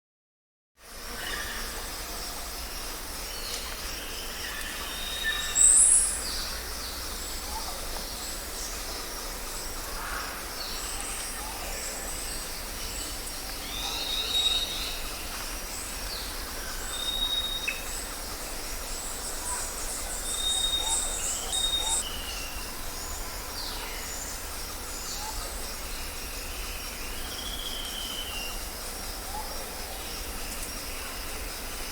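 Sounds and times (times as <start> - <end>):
background hiss: 0.8 - 31.9
songbirds chirping and whistling: 19.6 - 22.6.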